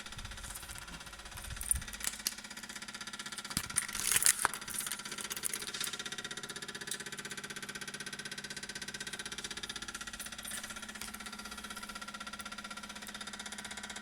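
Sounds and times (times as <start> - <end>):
loud clatter: 0.3 - 6.3.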